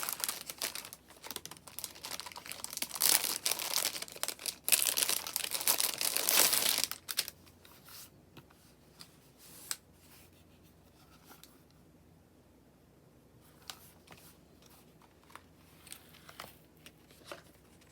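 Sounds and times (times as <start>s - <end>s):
packaging crinkled and torn: 0.0s - 7.4s.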